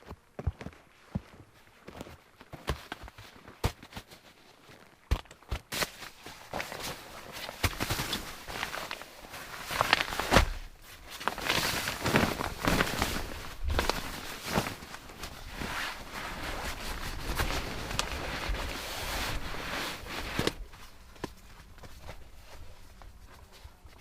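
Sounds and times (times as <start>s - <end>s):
boots walking on rock and twigs: 0.0s - 14.9s
rustling: 0.8s - 24.0s.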